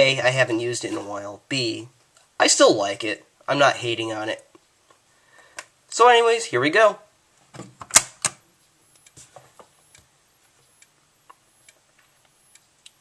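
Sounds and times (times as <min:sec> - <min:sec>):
faint irregular ticks: 0:09.8 - 0:13.0.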